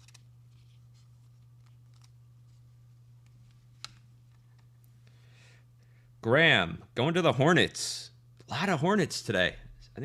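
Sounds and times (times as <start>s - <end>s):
trading cards clicking and rustling: 0.0s - 2.6s
low steady hum: 0.0s - 10.0s.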